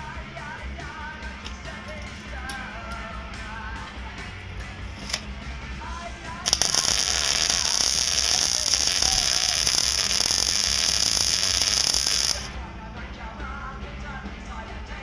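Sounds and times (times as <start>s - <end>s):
welder arc crackling: 4.8s - 5.3s, 6.1s - 12.6s.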